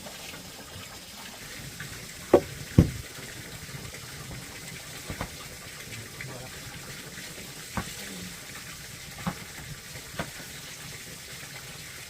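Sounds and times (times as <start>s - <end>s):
running water: 0.0s - 12.0s
loud knocks: 2.3s - 3.1s.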